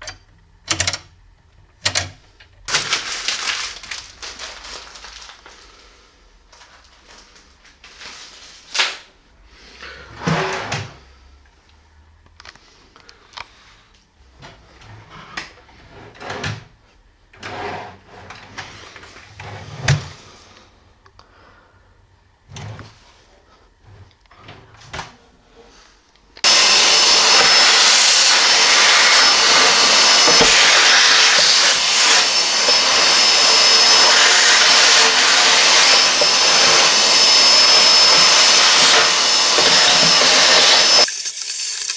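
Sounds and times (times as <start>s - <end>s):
electric motor whining: 26.4s - 41.9s.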